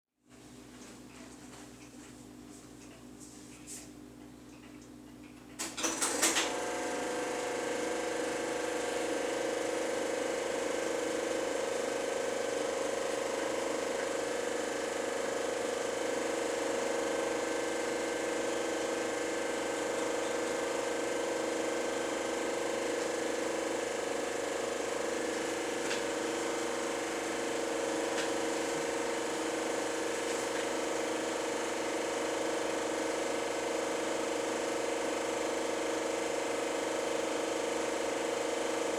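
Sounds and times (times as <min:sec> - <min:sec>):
film projector whirring: 0:04.2 - 0:38.9
film projector clicks: 0:05.6 - 0:06.7, 0:25.4 - 0:27.2.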